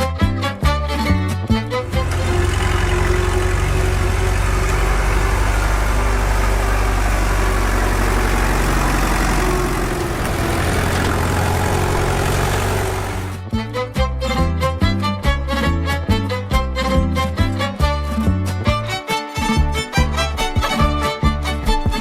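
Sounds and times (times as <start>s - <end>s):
music: 0.0s - 6.5s, 12.7s - 22.0s
engine rumbling: 1.4s - 15.2s.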